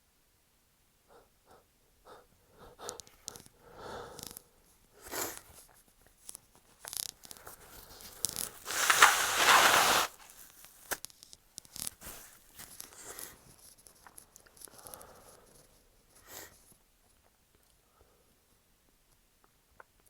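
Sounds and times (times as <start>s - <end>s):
soft breaths and sniffles: 7.5s - 10.4s, 12.0s - 16.8s
small rustling clicks: 8.0s - 12.0s
loud rough nasal blast: 8.7s - 10.2s.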